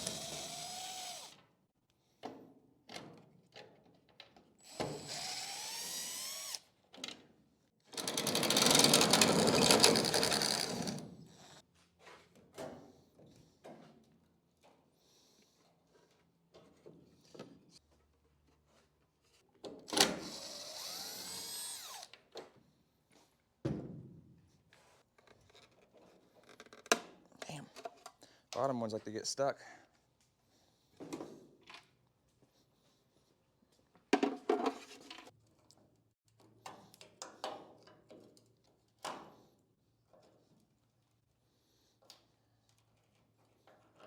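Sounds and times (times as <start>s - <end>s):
drill click: 0.0s - 1.3s, 4.7s - 6.6s
power drill whine: 0.0s - 1.3s, 4.6s - 6.6s, 8.0s - 11.6s, 20.2s - 22.1s.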